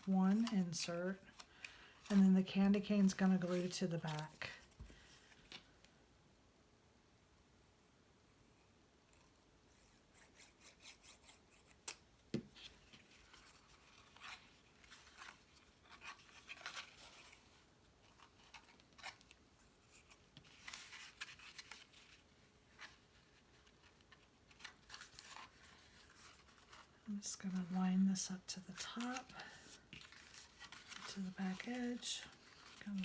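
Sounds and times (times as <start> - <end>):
cardstock rustling and scraping: 0.0 - 5.7, 12.5 - 33.0.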